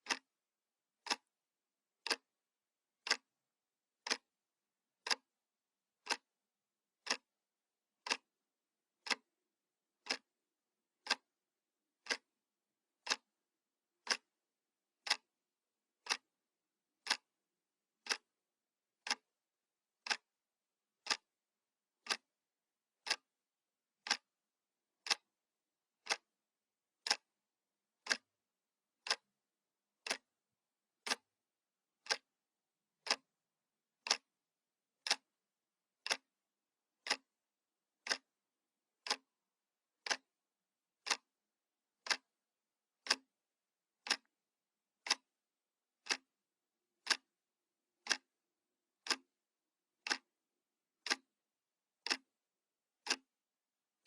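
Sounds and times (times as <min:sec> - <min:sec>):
clock ticking: 0:00.0 - 0:00.3, 0:01.0 - 0:01.3, 0:02.0 - 0:02.3, 0:03.0 - 0:03.3, 0:04.0 - 0:04.3, 0:05.0 - 0:05.3, 0:06.0 - 0:06.3, 0:07.0 - 0:07.3, 0:08.0 - 0:08.3, 0:09.0 - 0:09.3, 0:10.0 - 0:10.2, 0:11.0 - 0:11.3, 0:12.0 - 0:12.3, 0:13.0 - 0:13.3, 0:14.0 - 0:14.3, 0:15.0 - 0:15.3, 0:16.0 - 0:16.3, 0:17.0 - 0:17.3, 0:18.0 - 0:18.3, 0:19.0 - 0:19.2, 0:20.0 - 0:20.3, 0:21.0 - 0:21.3, 0:22.0 - 0:22.3, 0:23.0 - 0:23.3, 0:24.0 - 0:24.3, 0:25.0 - 0:25.3, 0:26.0 - 0:26.3, 0:27.0 - 0:27.3, 0:28.0 - 0:28.3, 0:29.0 - 0:29.3, 0:30.0 - 0:30.3, 0:31.0 - 0:31.3, 0:32.0 - 0:32.3, 0:33.0 - 0:33.3, 0:34.0 - 0:34.3, 0:35.0 - 0:35.4, 0:36.0 - 0:36.3, 0:37.0 - 0:37.3, 0:38.0 - 0:38.3, 0:39.0 - 0:39.3, 0:40.0 - 0:40.3, 0:41.0 - 0:41.3, 0:42.0 - 0:42.3, 0:43.0 - 0:43.3, 0:44.0 - 0:44.3, 0:45.0 - 0:45.3, 0:46.0 - 0:46.3, 0:47.0 - 0:47.3, 0:48.0 - 0:48.3, 0:49.0 - 0:49.3, 0:50.0 - 0:50.3, 0:51.0 - 0:51.3, 0:52.0 - 0:52.3, 0:53.0 - 0:53.3.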